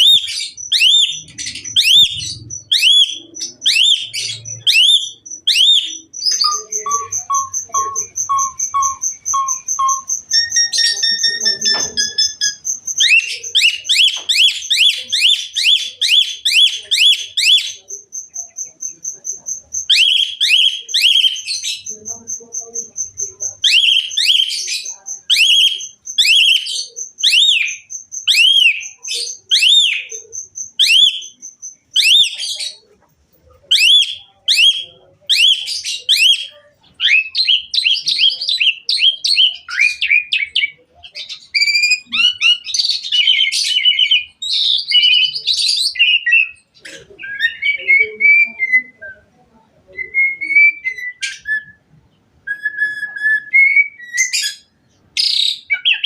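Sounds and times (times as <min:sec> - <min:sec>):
bird chattering calls: 0:00.0 - 0:17.8
starling whistled song: 0:00.0 - 0:22.0, 0:23.1 - 0:32.8, 0:33.7 - 0:56.0
steady high tone: 0:06.0 - 0:12.6.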